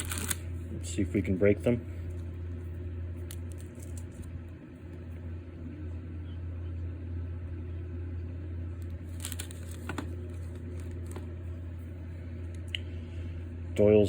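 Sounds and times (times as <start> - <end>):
cookies cracking in pliers: 0.0 - 0.4
low background hum: 0.0 - 14.0.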